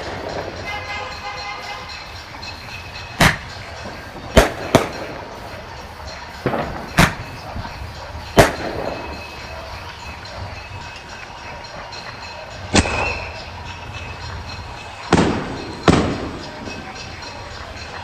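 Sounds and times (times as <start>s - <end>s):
roman candle firework bangs: 3.2s - 3.6s, 4.2s - 5.6s, 6.4s - 9.4s, 12.7s - 13.6s, 15.0s - 16.8s.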